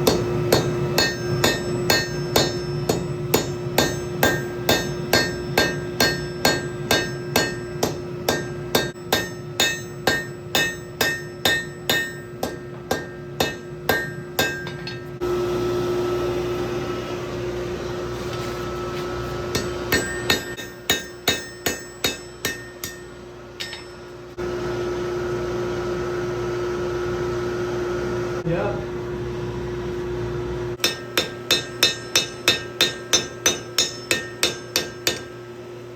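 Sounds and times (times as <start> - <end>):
hammer ringing on hot steel: 0.0 - 15.3, 19.4 - 24.4, 30.8 - 35.6
steady hum and rush: 0.0 - 25.2.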